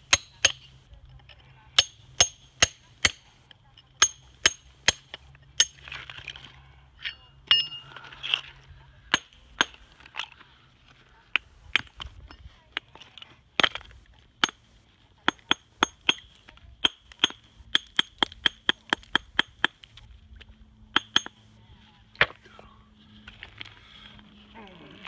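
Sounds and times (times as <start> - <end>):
hammer striking stone: 0.1 - 0.7, 1.8 - 3.2, 4.0 - 5.8, 7.5 - 7.8, 9.1 - 9.8, 13.6 - 14.6, 15.3 - 19.8, 21.0 - 21.4.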